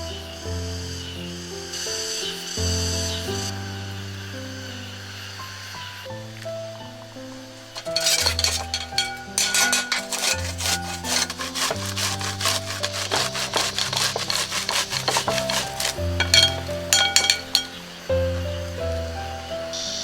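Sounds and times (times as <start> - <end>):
rapid rubbing strokes: 7.8 - 17.8.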